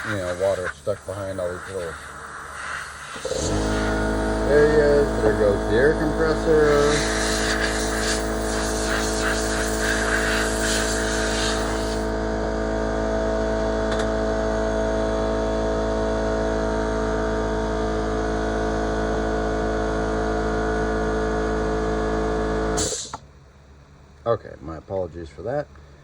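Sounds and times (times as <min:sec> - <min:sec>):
air blow gun hissing: 0:00.0 - 0:12.1, 0:22.8 - 0:23.2
air compressor humming: 0:00.0 - 0:24.0.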